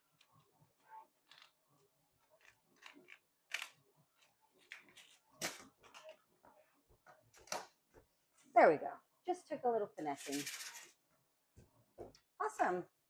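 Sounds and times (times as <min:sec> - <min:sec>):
faint plastic clicks and scrapes: 0:00.0 - 0:05.2.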